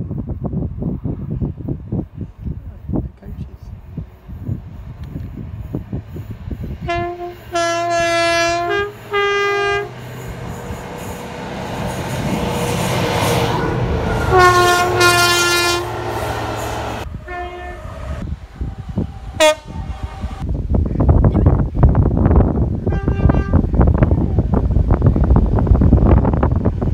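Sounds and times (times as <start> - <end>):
train rushing and rumbling: 0.0 - 26.9
two-tone train air horn: 6.8 - 10.1, 14.1 - 18.2, 19.3 - 20.4.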